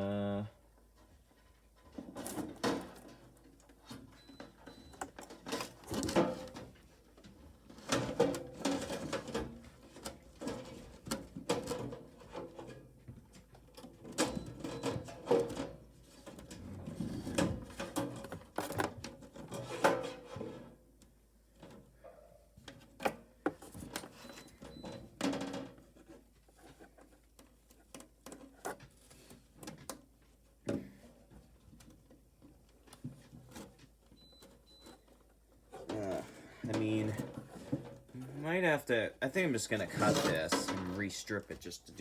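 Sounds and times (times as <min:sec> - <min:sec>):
wire rustling and scraping: 0:15.5 - 0:20.8, 0:39.6 - 0:42.0.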